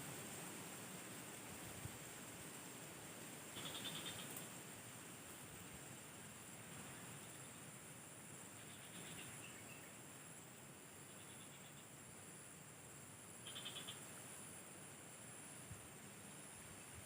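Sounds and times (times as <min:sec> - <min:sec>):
high-pitched insect chorus: 0:01.7 - 0:17.0
clicking insect trills: 0:03.5 - 0:04.6, 0:06.8 - 0:17.0.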